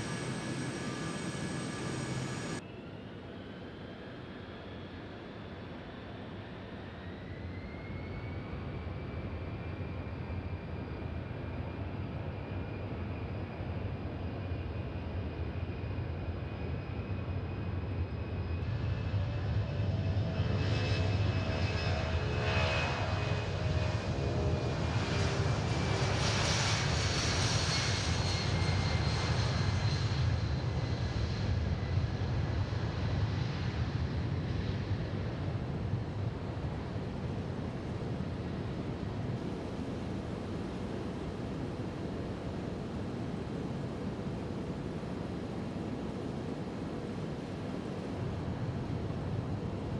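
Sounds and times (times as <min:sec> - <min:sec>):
jet engines whining: 0:00.0 - 0:04.8.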